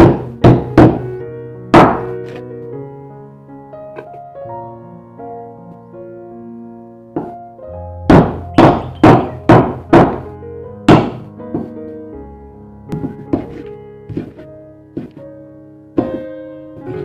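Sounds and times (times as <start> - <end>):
soft piano music: 0.0 - 17.0
heavy thuds: 12.9 - 15.2.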